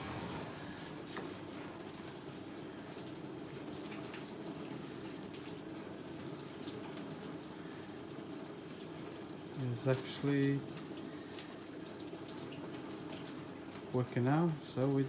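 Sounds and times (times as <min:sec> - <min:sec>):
water rushing inside dishwasher: 0:00.0 - 0:07.5.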